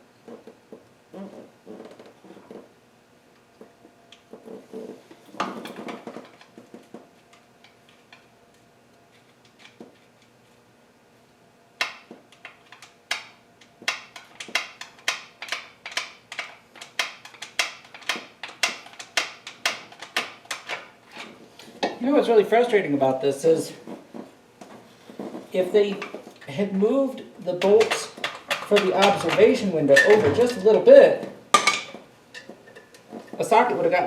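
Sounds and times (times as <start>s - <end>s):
metal tools clattering: 27.6s - 30.9s.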